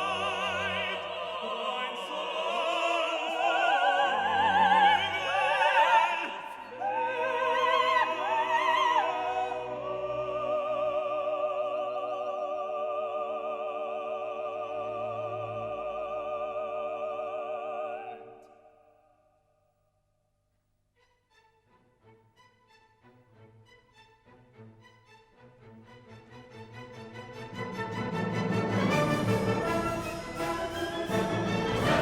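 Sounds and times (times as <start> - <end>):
operatic singing: 0.0 - 19.0, 26.6 - 32.0
orchestral accompaniment: 21.3 - 32.0.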